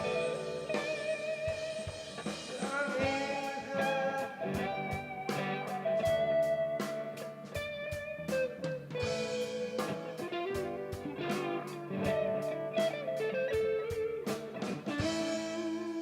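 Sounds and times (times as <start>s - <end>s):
electric guitar sustained notes: 0.0s - 16.0s
steady beat: 0.0s - 16.0s.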